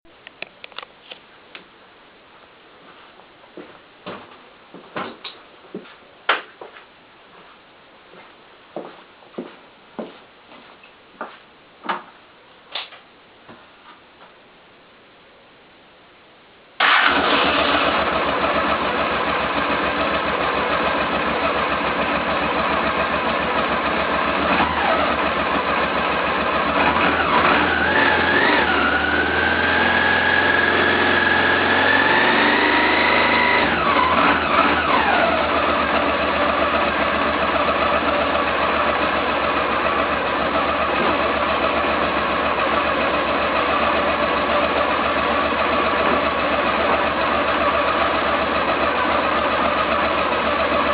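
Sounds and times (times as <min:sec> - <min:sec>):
motorcycle engine starting and idling: 0:16.8 - 0:50.9.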